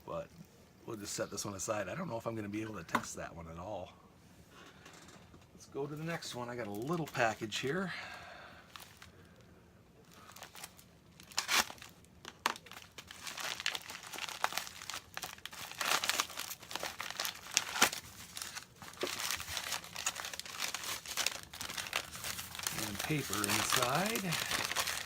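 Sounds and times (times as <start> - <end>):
paper wrapping crinkling: 8.7 - 9.1, 10.1 - 25.0
package being torn open: 10.3 - 25.0.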